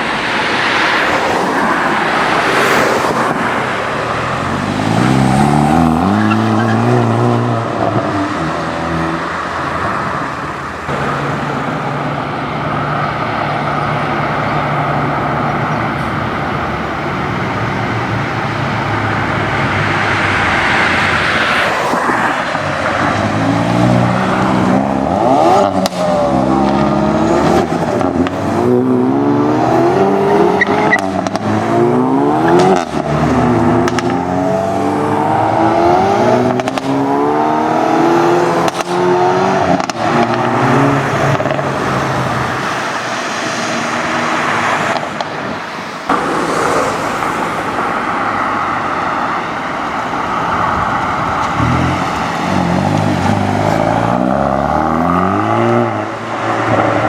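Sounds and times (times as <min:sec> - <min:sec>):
car engine revving: 0:00.0 - 0:57.0
exhaust pops: 0:33.8 - 0:34.2, 0:46.1 - 0:54.3.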